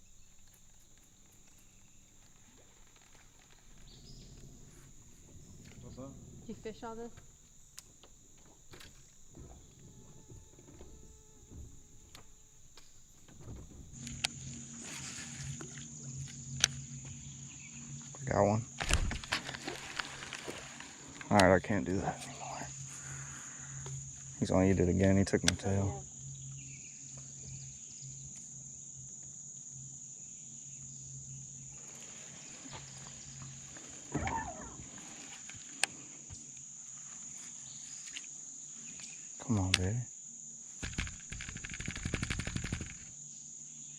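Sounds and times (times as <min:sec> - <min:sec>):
low steady hum: 0:00.0 - 0:31.8
insects chirping: 0:00.0 - 0:43.9
sharp clicks: 0:40.8 - 0:43.1.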